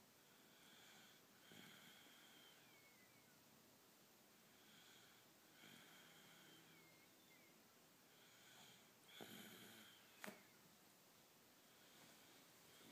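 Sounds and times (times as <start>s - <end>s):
faint snoring with nose whistle: 0.2s - 3.4s, 4.6s - 7.5s, 8.1s - 10.2s.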